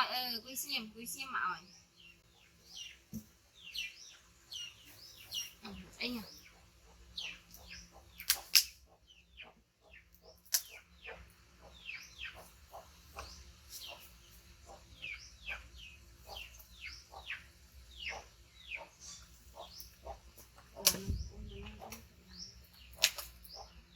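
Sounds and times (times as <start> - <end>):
sharp clicks: 8.2 - 8.8, 20.8 - 21.1.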